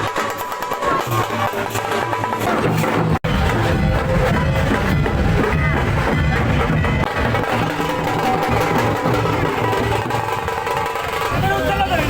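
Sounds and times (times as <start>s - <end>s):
loud instrumental music: 0.0s - 12.0s.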